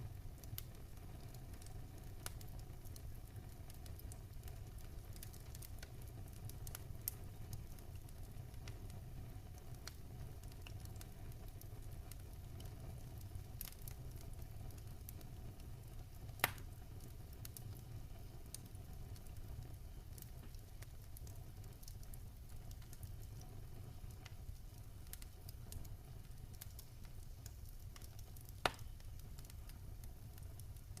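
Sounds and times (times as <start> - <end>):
campfire crackling: 0.0 - 31.0
burning wood popping: 9.6 - 31.0.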